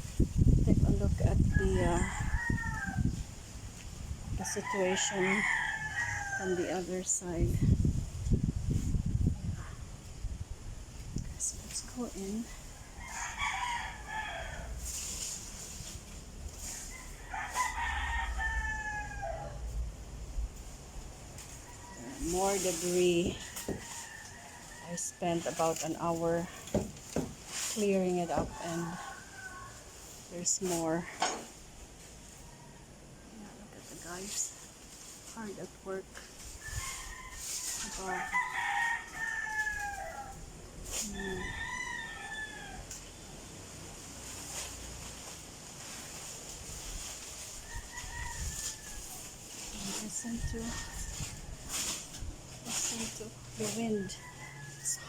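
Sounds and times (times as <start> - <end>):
rooster crowing: 1.8 - 3.2, 4.6 - 6.8, 12.8 - 14.9, 16.8 - 19.8, 36.7 - 40.5, 41.1 - 43.1, 47.6 - 49.2, 54.1 - 55.0.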